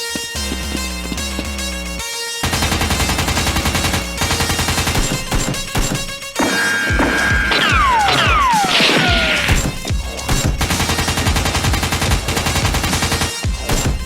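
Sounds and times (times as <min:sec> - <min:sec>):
background music: 0:00.0 - 0:14.0
downward whistling tones: 0:06.4 - 0:09.8
automatic gunfire sound effects: 0:06.4 - 0:09.9.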